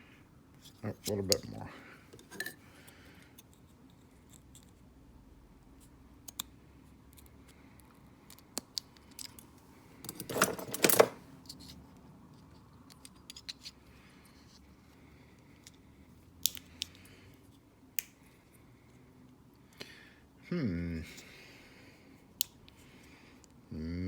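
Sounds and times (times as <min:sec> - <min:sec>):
lock parts clicking and scraping: 0:01.0 - 0:02.6, 0:10.0 - 0:11.8, 0:12.8 - 0:13.8.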